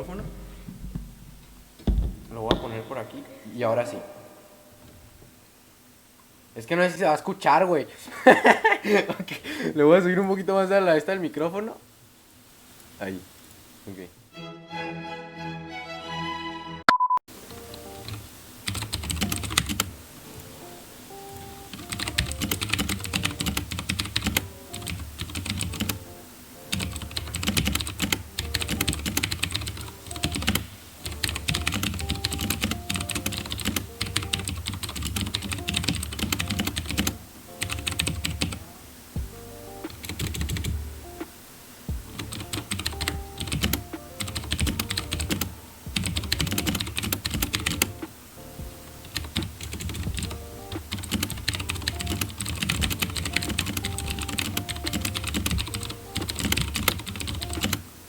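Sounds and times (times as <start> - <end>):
clicky mechanical keyboard typing: 18.0 - 19.9, 21.4 - 26.0, 26.7 - 38.6, 42.2 - 47.9, 49.1 - 57.8.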